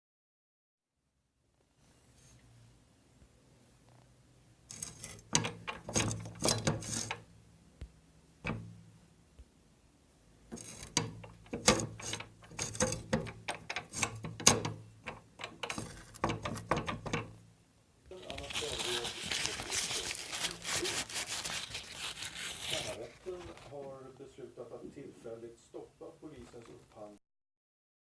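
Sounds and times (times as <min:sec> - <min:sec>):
paper cutter clicking and clattering: 0:04.7 - 0:07.2, 0:10.5 - 0:17.4.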